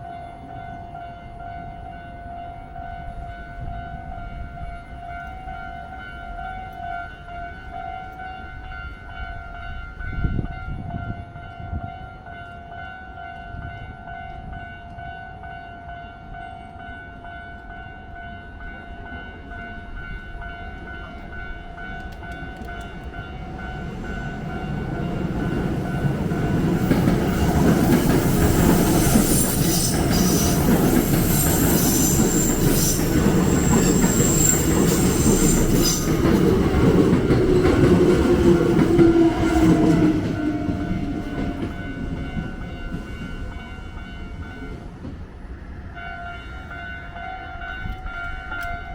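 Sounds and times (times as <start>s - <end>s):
train wheels rumbling on rails: 17.5s - 48.9s.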